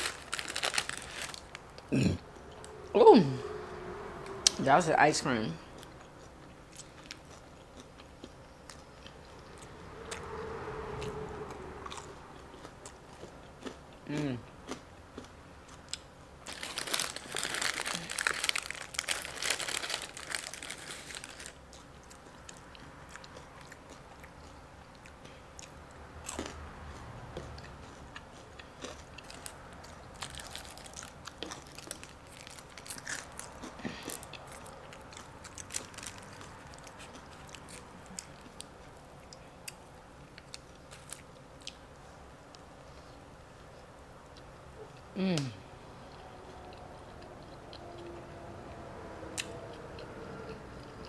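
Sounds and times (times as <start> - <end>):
person biting and chewing food: 0.0 - 2.7, 11.8 - 41.8.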